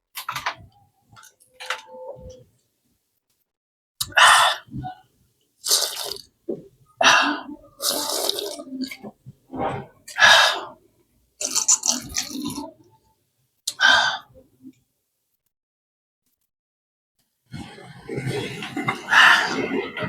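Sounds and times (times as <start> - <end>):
wet chewing and sucking: 5.6 - 10.8, 11.4 - 12.7.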